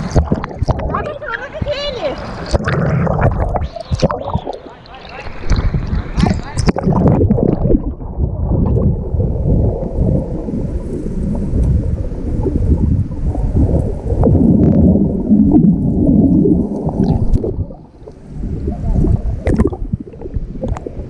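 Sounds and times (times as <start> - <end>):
underwater rumbling and gurgling: 0.0 - 21.0.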